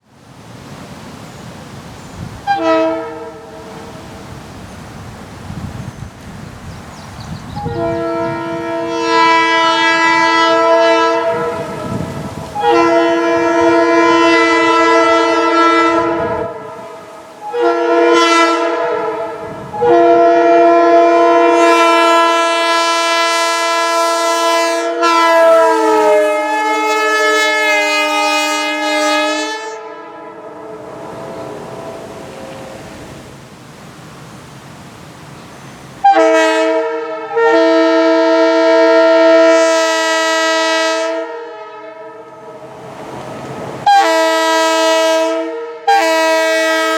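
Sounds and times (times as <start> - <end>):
locomotive air horn blasts: 2.4 - 4.0, 7.6 - 33.4, 36.0 - 43.1, 43.8 - 46.9.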